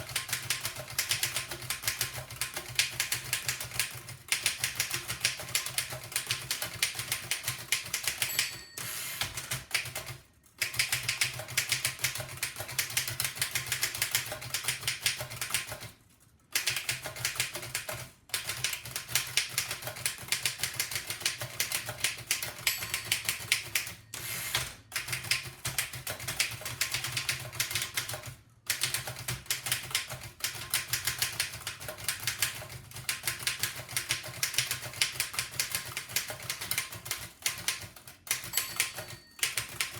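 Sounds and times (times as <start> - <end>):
typewriter clacking: 16.6 - 39.9.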